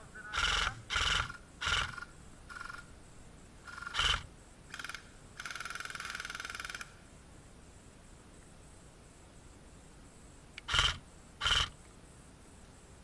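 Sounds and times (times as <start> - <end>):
airsoft gun firing full-auto burst: 0.3 - 2.0, 10.6 - 11.8.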